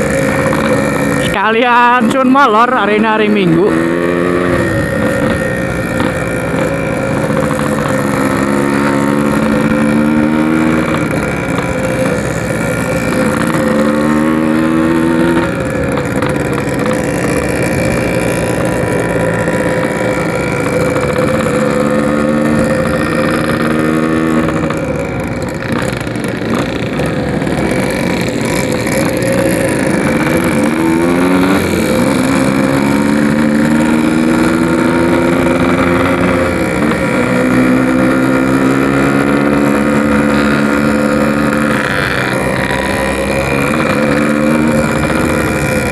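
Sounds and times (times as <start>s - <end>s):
two-stroke motorcycle engine revving: 0.0s - 45.9s.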